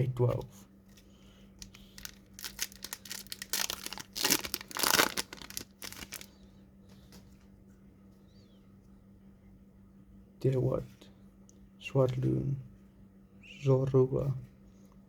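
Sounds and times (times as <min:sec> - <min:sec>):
foil wrapper crinkling and tearing: 0:01.6 - 0:06.3.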